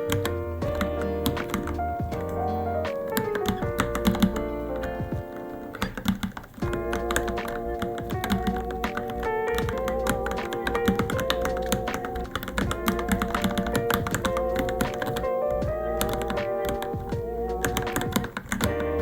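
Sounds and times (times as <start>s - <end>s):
background music: 0.0s - 19.0s
mechanical keyboard typing: 0.0s - 19.0s.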